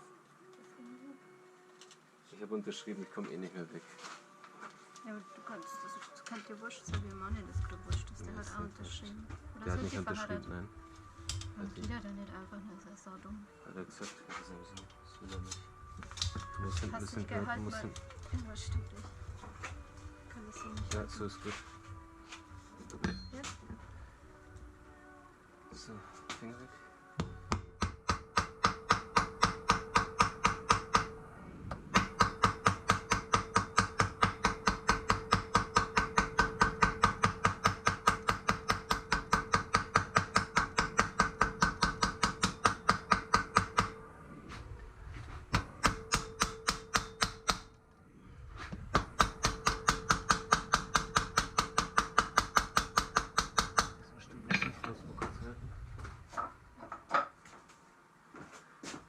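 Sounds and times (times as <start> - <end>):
hammer striking metal plate: 27.2 - 44.0, 45.5 - 47.7, 48.9 - 54.9.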